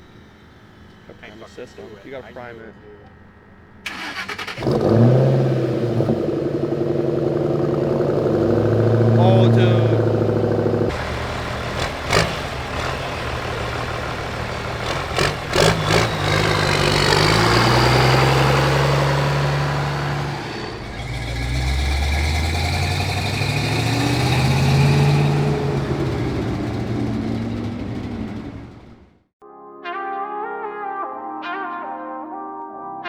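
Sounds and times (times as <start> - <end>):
car engine revving: 3.6 - 29.3.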